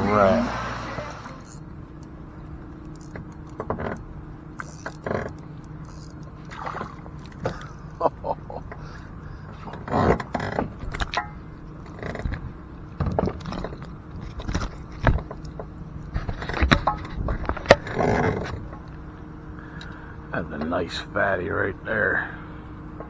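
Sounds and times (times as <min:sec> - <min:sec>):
faint steady hum: 0:00.0 - 0:23.0
fishing gear knocking and rattling: 0:02.7 - 0:19.0.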